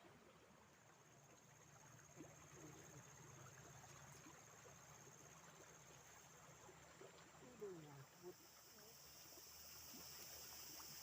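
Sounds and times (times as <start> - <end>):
high-pitched insect trill: 8.0 - 11.0.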